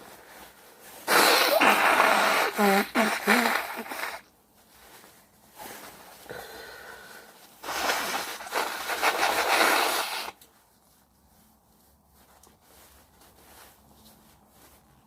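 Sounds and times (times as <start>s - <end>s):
man blowing his nose: 1.0s - 4.3s, 6.3s - 10.4s.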